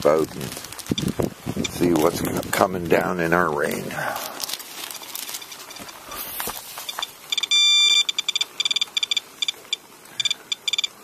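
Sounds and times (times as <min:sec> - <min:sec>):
radiation counter beeping: 0:00.9 - 0:02.0, 0:06.8 - 0:11.0.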